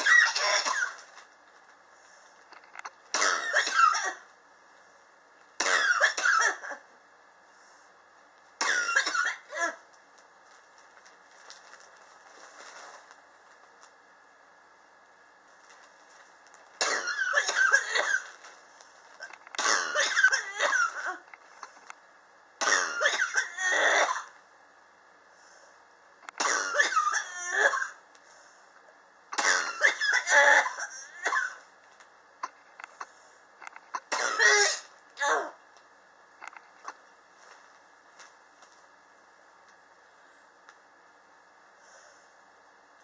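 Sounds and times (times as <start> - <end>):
person coughing: 0.0 - 1.0, 3.2 - 4.3, 5.6 - 6.8, 8.6 - 9.8, 16.8 - 18.4, 19.6 - 21.3, 22.6 - 24.3, 26.4 - 28.0, 29.4 - 31.6, 34.0 - 35.6.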